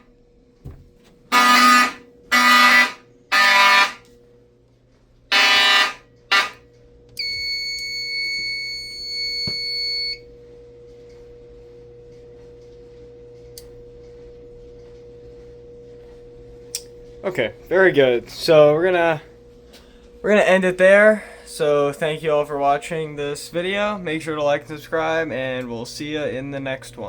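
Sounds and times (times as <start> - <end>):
fire alarm horn blasts: 1.3 - 4.1, 5.3 - 10.3
high electronic beep: 5.3 - 6.6.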